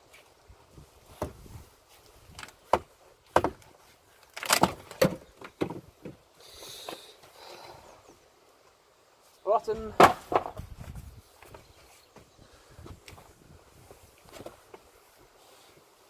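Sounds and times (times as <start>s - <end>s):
wooden boards knocking: 2.7s - 3.6s, 4.5s - 6.2s, 9.9s - 10.6s.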